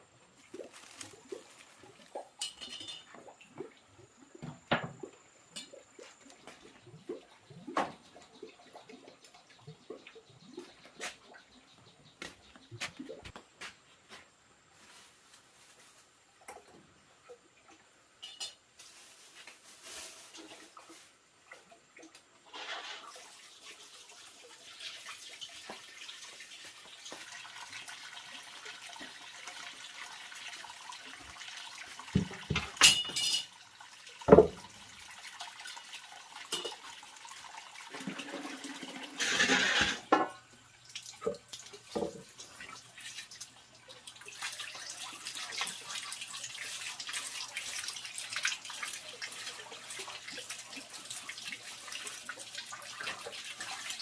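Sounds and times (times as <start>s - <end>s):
water running and splashing: 0.0s - 11.5s, 14.8s - 54.0s.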